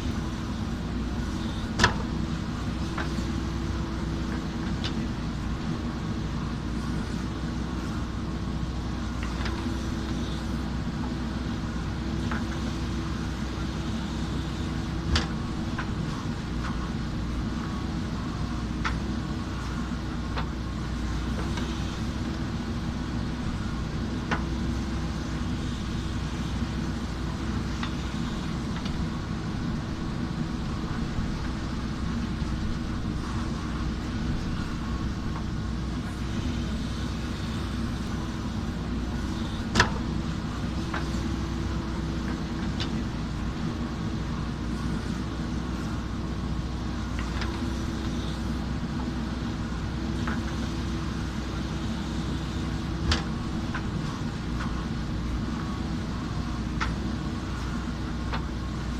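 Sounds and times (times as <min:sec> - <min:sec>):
diesel engine running: 0:00.0 - 0:58.9
sharp clicks and knocks: 0:53.0 - 0:53.9.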